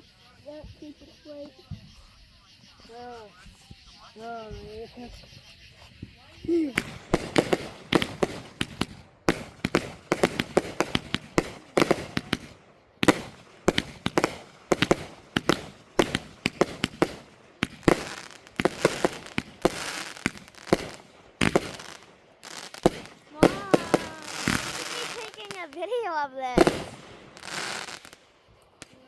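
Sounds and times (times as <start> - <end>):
fireworks bangs and cracks: 6.0 - 29.0.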